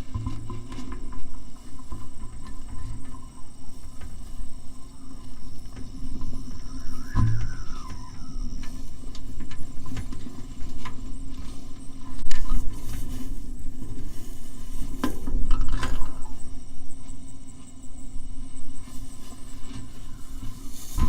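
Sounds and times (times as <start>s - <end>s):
kite reel resonator humming: 0.0s - 21.0s.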